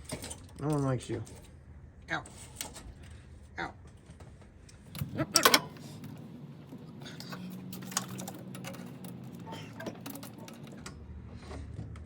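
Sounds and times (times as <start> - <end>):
tools and metal parts clacking: 0.0 - 1.6, 4.8 - 6.2, 7.0 - 11.6.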